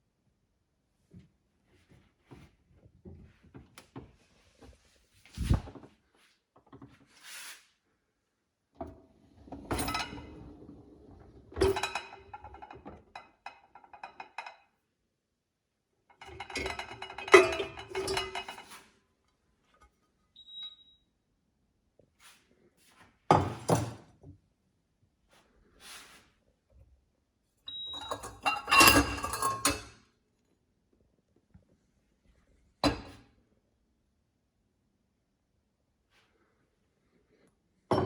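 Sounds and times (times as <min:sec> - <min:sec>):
dishes clattering and clinking: 0:09.5 - 0:10.7, 0:11.5 - 0:14.7, 0:16.1 - 0:18.9, 0:23.3 - 0:24.0, 0:27.7 - 0:30.1, 0:32.8 - 0:33.3.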